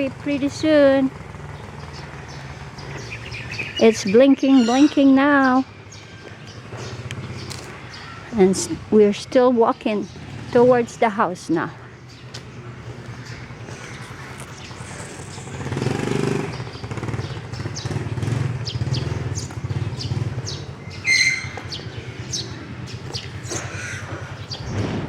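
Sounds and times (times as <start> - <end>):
vehicle engine passing: 0.0 - 9.2, 9.8 - 25.0
small birds chirping: 0.0 - 25.0
loud high bird call: 2.3 - 5.2, 20.8 - 24.9.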